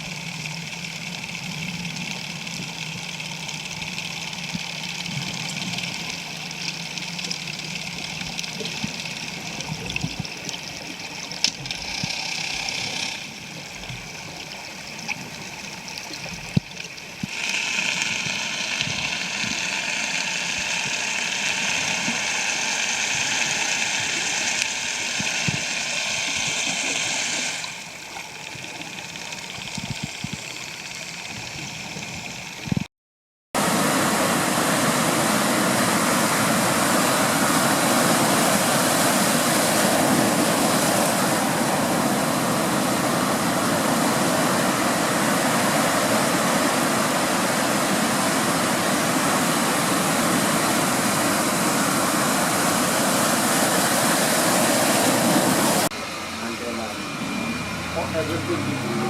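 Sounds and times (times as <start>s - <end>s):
faint steady hum: 0.0s - 32.9s.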